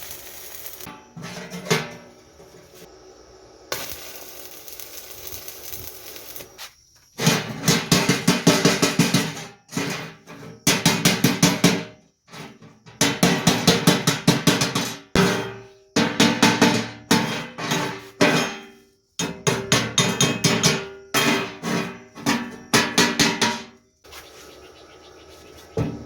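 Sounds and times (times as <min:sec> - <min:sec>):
rapid hammering on metal: 0:13.0 - 0:17.4, 0:22.3 - 0:23.8.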